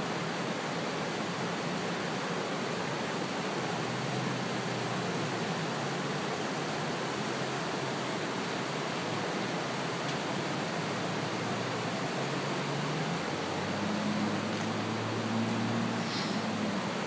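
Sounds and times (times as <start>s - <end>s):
floodwater rushing in creek: 0.0s - 17.0s.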